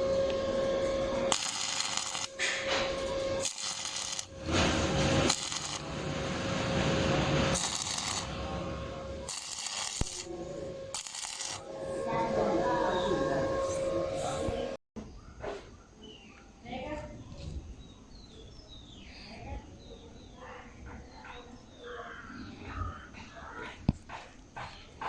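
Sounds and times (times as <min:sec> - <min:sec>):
metal clinking and scraping: 0:00.0 - 0:14.6
steady hum: 0:00.0 - 0:14.8.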